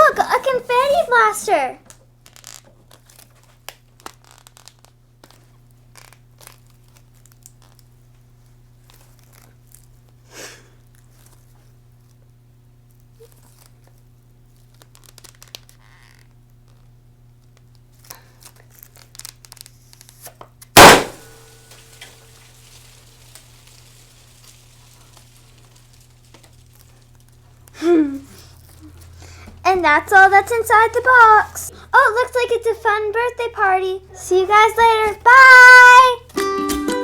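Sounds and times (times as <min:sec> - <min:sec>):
faint rustling and handling clicks: 0:01.9 - 0:10.2
confetti blaster pop: 0:20.8 - 0:25.5.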